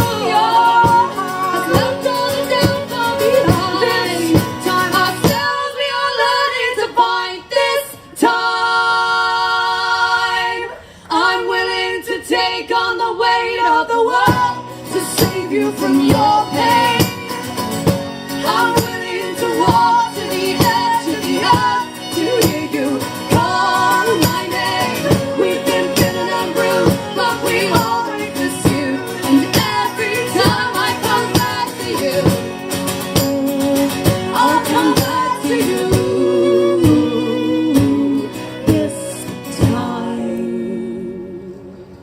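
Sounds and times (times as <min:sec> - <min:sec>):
strummed acoustic guitar: 0:00.0 - 0:05.8, 0:14.2 - 0:40.3
woman singing: 0:00.0 - 0:41.8.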